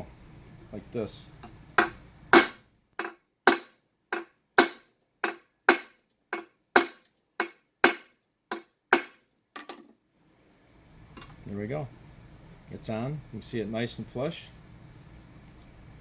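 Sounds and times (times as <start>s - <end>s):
hammer blows on metal: 1.8s - 2.6s.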